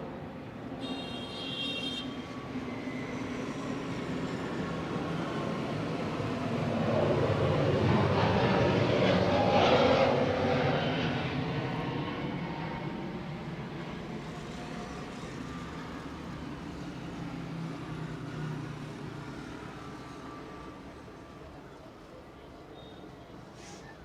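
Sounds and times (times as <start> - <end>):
street traffic noise: 0.0 - 8.8, 12.3 - 24.0
short high-pitched vehicle horn: 0.8 - 2.2.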